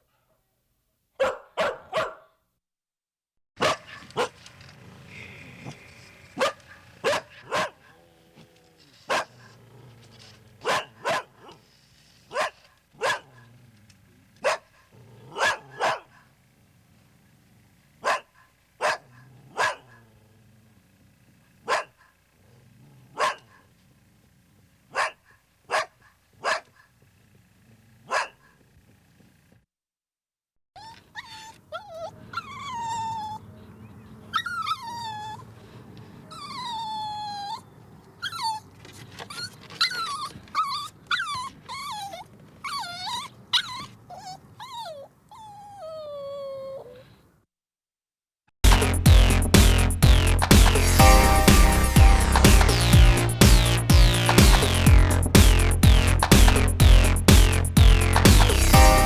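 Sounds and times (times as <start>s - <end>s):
dog barking: 1.2s - 2.4s, 3.6s - 4.4s, 6.4s - 8.0s, 9.1s - 9.5s, 10.6s - 11.6s, 12.3s - 13.5s, 14.4s - 16.3s, 18.0s - 20.0s, 21.6s - 22.2s, 23.2s - 23.7s, 24.9s - 26.9s, 28.0s - 28.6s.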